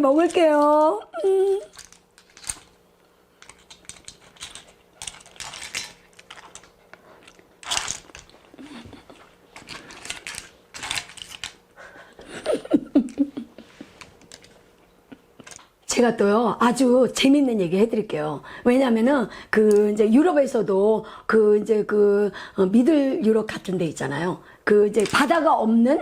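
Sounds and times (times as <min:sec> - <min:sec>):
person humming: 0:01.0 - 0:01.8.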